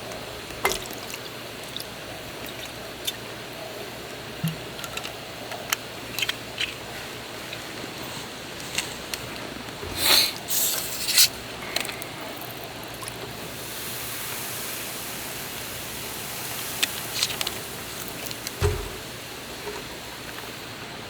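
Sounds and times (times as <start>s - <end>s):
steady hiss: 1.2s - 21.0s
clattering and rustling: 17.2s - 20.5s
dull thump: 18.6s - 19.9s.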